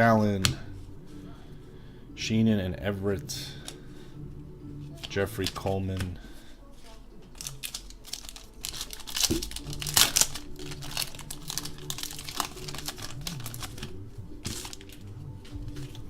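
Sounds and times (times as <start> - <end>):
cards rustling: 3.5 - 3.9, 4.9 - 16.0
wrapper crinkling and tearing: 7.3 - 15.0.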